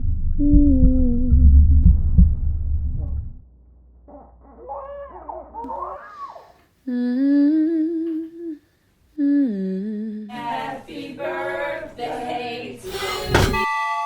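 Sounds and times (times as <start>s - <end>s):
person humming a slow tune: 0.4s - 1.5s, 6.8s - 10.3s.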